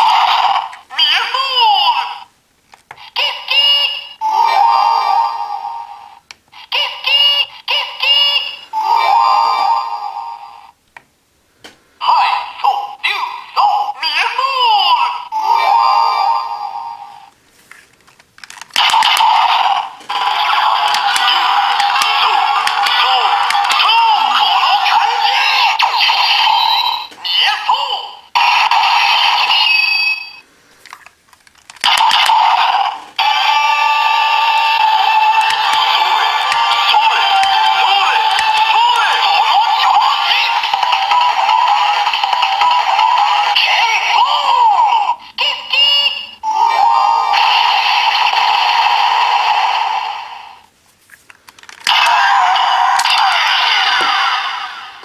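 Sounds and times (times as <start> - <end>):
faint clicks of toy handling: 2.6 - 3.1, 17.4 - 24.6, 30.7 - 33.1, 35.2 - 39.5, 50.9 - 54.2
toy sword electronic sound effects: 18.8 - 27.1, 31.8 - 43.8, 51.8 - 54.7.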